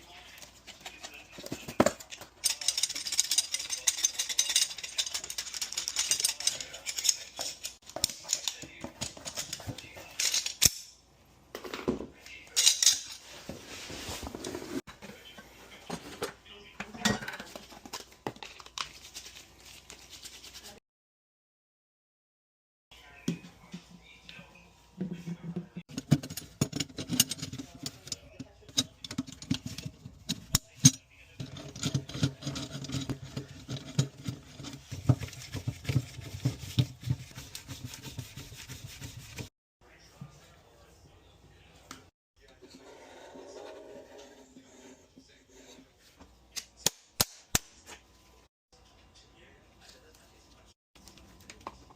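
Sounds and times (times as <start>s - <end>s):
metal tools clinking and clattering: 0.6s - 11.0s, 12.5s - 13.4s, 25.9s - 35.3s.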